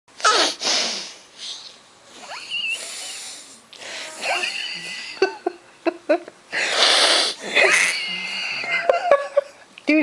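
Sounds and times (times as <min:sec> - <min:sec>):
squeaky wheezy nasal sounds: 0:00.2 - 0:05.1, 0:06.6 - 0:08.4
girl sniffling and snorting: 0:00.3 - 0:01.7, 0:06.6 - 0:07.9.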